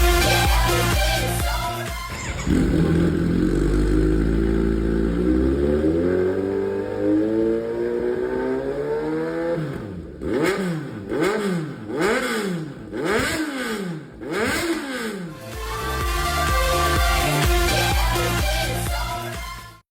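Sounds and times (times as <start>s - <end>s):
electronic dance music: 0.0s - 4.0s, 15.2s - 19.8s
motorcycle engine revving: 0.0s - 19.0s.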